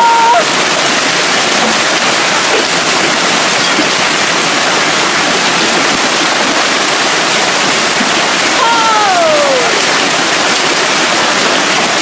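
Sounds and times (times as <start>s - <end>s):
hail and heavy rain pelting: 0.0s - 12.0s.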